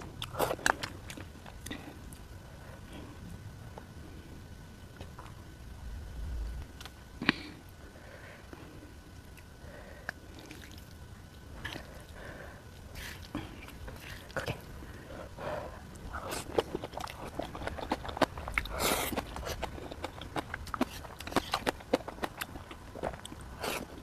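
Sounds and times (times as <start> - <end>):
wet chewing: 0.0 - 2.3, 11.6 - 24.0.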